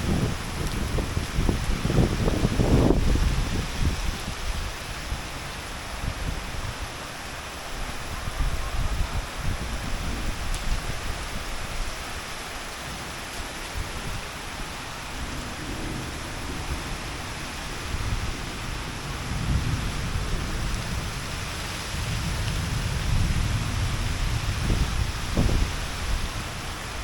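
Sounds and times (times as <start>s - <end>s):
gusty wind rumbles: 0.0s - 27.0s
heavy rain pouring: 0.0s - 27.0s.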